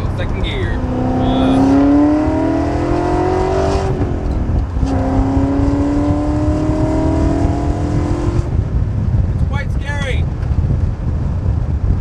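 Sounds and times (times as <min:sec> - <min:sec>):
car engine revving hard: 0:00.0 - 0:08.5.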